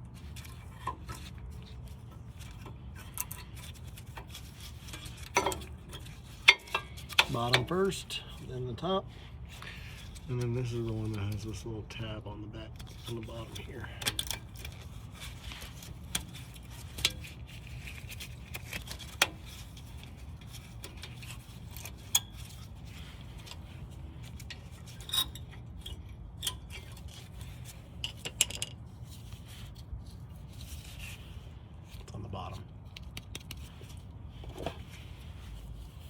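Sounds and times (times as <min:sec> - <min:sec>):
steady low hum: 0:00.0 - 0:36.0
metal brake pads clinking and scraping: 0:00.2 - 0:08.3, 0:12.8 - 0:29.4.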